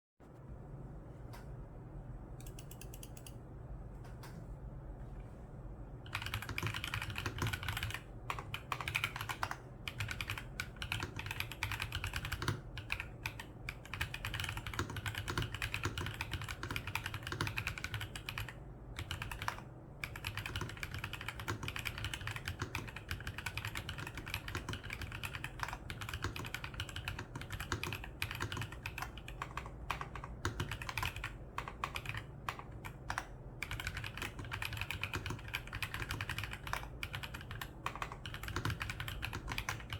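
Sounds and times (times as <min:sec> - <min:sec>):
mechanical keyboard typing: 0:06.0 - 0:39.9.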